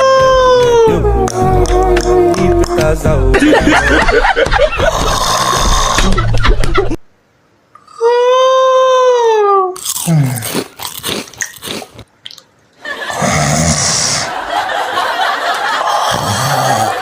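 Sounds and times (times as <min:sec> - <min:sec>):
noisy breathing with low rumble: 0:04.8 - 0:06.3
loud snoring: 0:04.9 - 0:06.1, 0:13.1 - 0:14.3.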